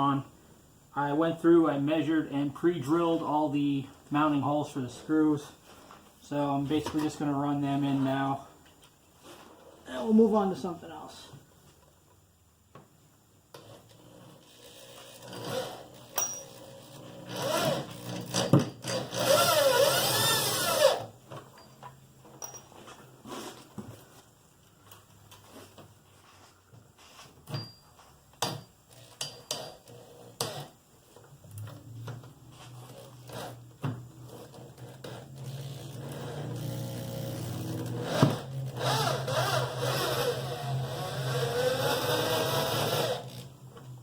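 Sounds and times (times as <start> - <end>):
power drill driving screws: 13.9 - 21.1, 28.9 - 30.7, 34.3 - 43.5.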